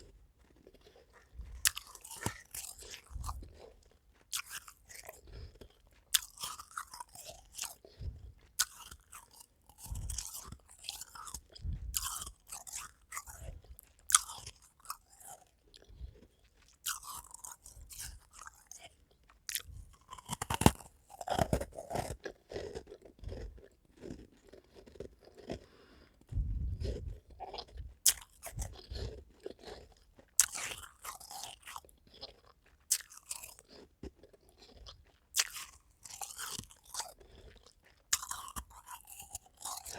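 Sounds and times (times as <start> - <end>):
person crunching ice: 0.4 - 7.9, 19.5 - 39.9.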